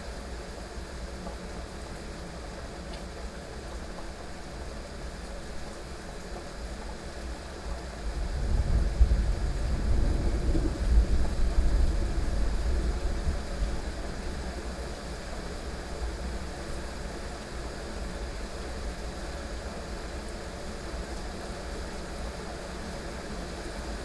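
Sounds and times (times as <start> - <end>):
heavy rain: 8.0 - 16.9
rolling thunder: 8.2 - 14.1.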